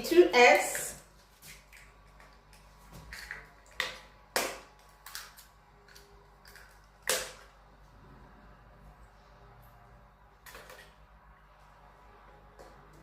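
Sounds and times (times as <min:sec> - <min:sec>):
eggs cracking against bowl: 0:01.4 - 0:07.7.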